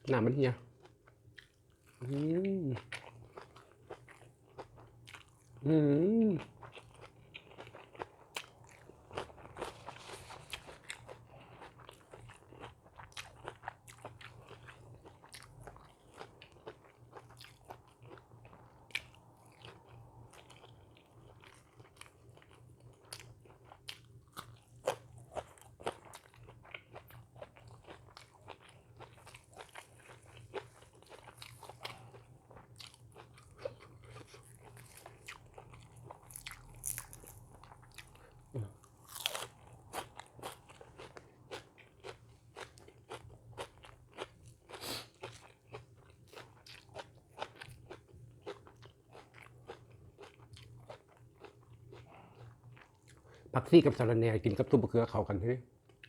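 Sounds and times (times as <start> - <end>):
crunchy bites and chewing: 19.8 - 52.9.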